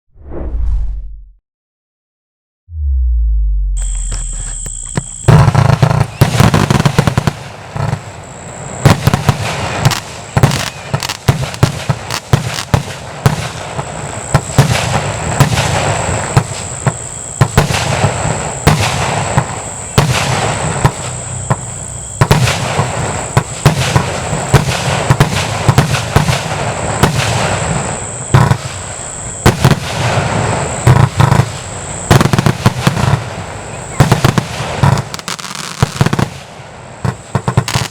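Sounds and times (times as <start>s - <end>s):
low rumble: 0.1s - 1.4s, 2.7s - 5.4s
fireworks barrage with bangs and crackling: 3.8s - 37.9s.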